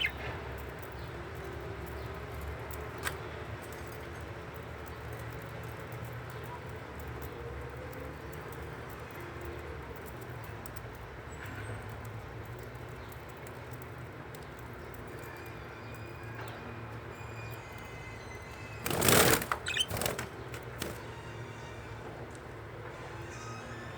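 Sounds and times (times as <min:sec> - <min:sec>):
birds wing flapping: 0:18.8 - 0:21.1.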